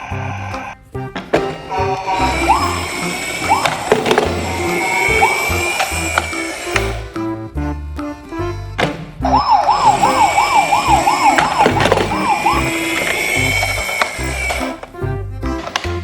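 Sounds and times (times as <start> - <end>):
steady high tone: 1.5 - 7.4, 9.2 - 14.9
siren wailing: 1.7 - 7.0, 9.3 - 14.8.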